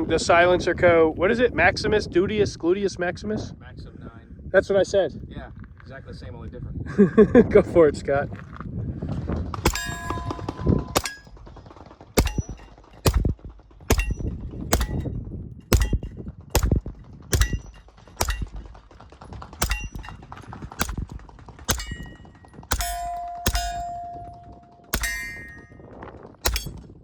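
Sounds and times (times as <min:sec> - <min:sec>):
bullets ringing steel targets: 0:09.6 - 0:11.4, 0:12.2 - 0:15.1, 0:15.7 - 0:18.8, 0:19.6 - 0:27.0
suppressed pistol shots: 0:12.2 - 0:15.1, 0:15.7 - 0:18.7, 0:19.6 - 0:20.2, 0:20.8 - 0:25.7, 0:26.4 - 0:26.9.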